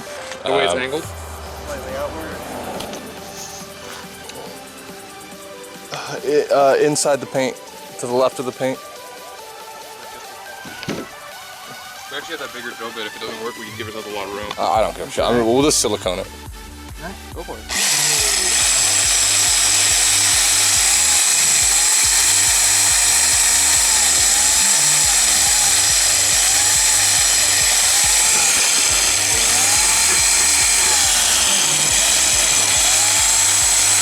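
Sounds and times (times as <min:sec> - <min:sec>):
drill whining through metal: 0:17.6 - 0:34.0.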